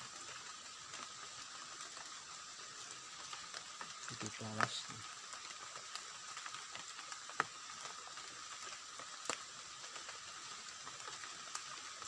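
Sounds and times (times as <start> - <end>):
trickling water: 0.0 - 12.0.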